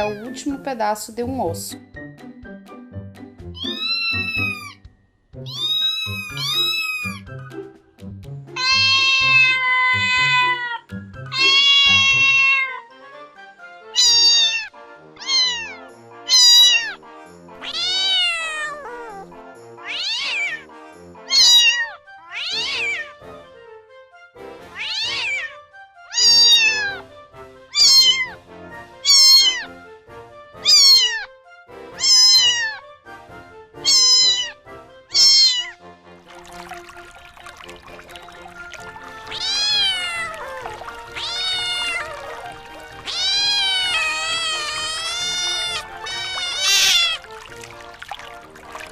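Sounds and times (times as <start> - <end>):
soft background music: 0.0 - 48.9
cat meowing: 3.6 - 4.8, 5.4 - 7.2, 8.6 - 12.9, 14.0 - 17.0, 17.6 - 20.7, 21.3 - 23.2, 24.7 - 27.0, 27.7 - 28.4, 29.0 - 29.7, 30.6 - 31.3, 32.0 - 32.8, 33.8 - 35.8, 38.7 - 48.8.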